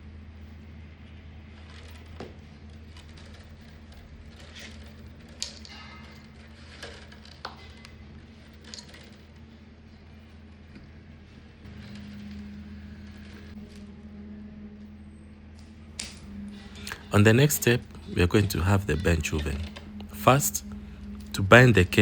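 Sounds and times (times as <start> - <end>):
low hum: 11.7 - 22.0.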